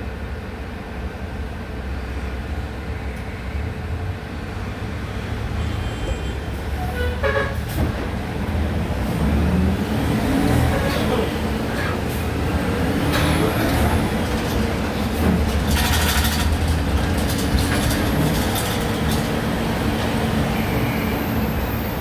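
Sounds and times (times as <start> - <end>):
bus engine running: 0.0 - 22.0.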